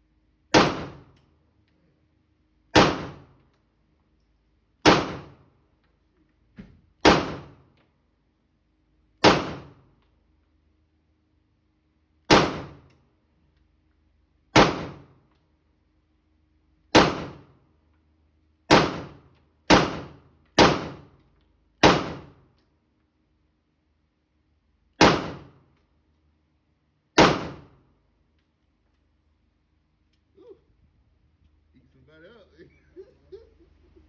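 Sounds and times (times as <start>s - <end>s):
handgun shots: 0.5s - 1.2s, 2.8s - 3.3s, 4.8s - 5.4s, 7.0s - 7.6s, 9.2s - 9.8s, 12.3s - 12.9s, 14.6s - 15.1s, 17.0s - 17.5s, 18.7s - 21.2s, 21.8s - 22.4s, 25.0s - 25.6s, 27.2s - 27.8s.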